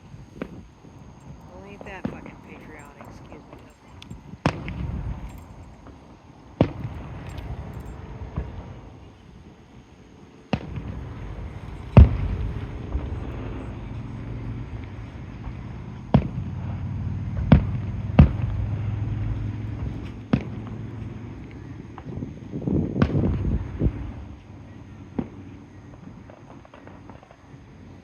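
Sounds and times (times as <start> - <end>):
fireworks booming: 0.0 - 9.6, 10.5 - 27.7
fireworks crackling: 10.5 - 24.5
low rolling rumble: 10.6 - 27.2.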